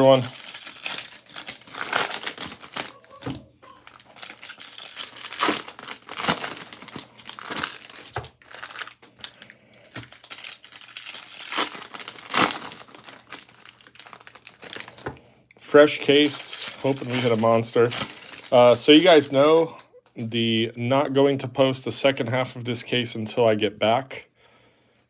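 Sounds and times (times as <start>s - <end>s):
wrappers tearing and crinkling: 0.0s - 15.1s, 16.1s - 19.7s.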